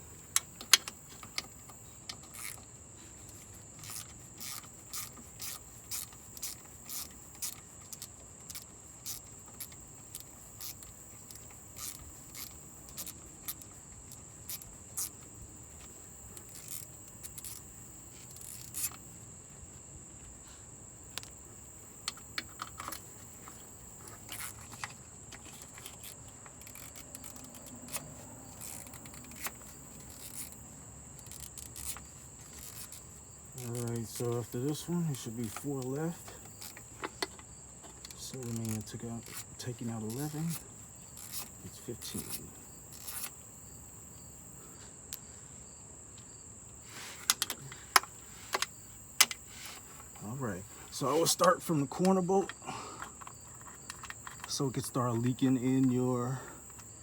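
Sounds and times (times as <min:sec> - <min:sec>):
hand ratchet clicking: 0:00.0 - 0:02.7, 0:03.3 - 0:19.1, 0:22.0 - 0:30.6, 0:31.2 - 0:43.4.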